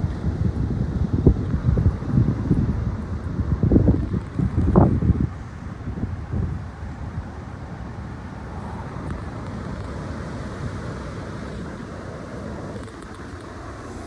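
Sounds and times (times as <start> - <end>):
wind buffeting microphone: 0.0 - 9.8
strong wind rushing: 13.6 - 14.0.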